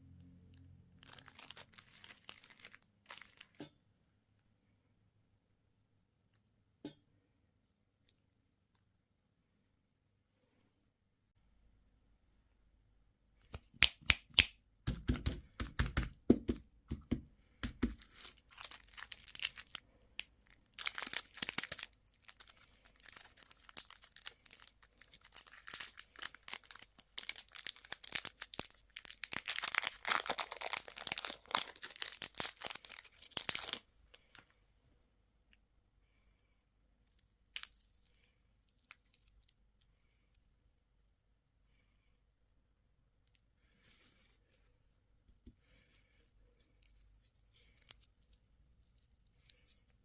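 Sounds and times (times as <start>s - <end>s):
packaging crinkling and tearing: 1.0s - 3.6s, 17.7s - 34.4s, 37.1s - 38.1s, 46.6s - 50.0s.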